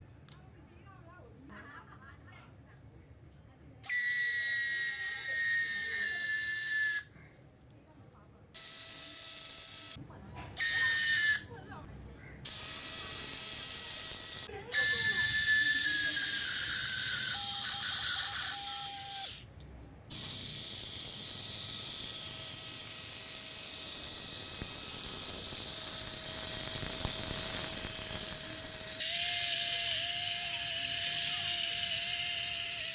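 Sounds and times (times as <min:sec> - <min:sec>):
toy motor whirring: 0:03.8 - 0:07.1, 0:08.6 - 0:11.6, 0:12.4 - 0:19.5, 0:20.1 - 0:32.9.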